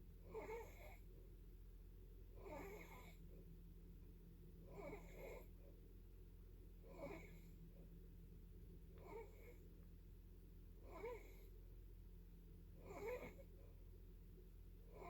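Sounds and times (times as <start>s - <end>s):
faint raspy snoring: 0.3s - 1.0s, 2.4s - 3.2s, 4.7s - 5.5s, 6.9s - 7.5s, 9.0s - 9.6s, 10.9s - 11.5s, 12.8s - 13.4s.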